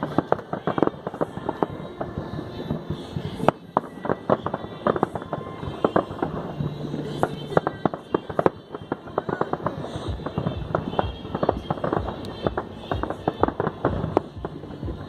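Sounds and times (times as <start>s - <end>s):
faint hum of music or voices: 0.0s - 15.0s.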